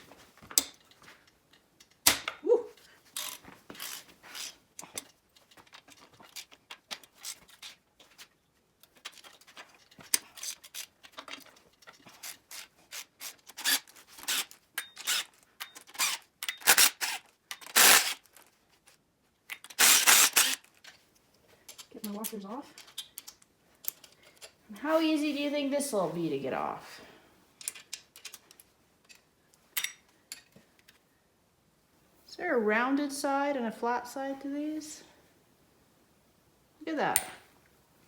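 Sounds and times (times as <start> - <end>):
metallic clicking and scraping: 19.5 - 24.9, 27.6 - 31.0.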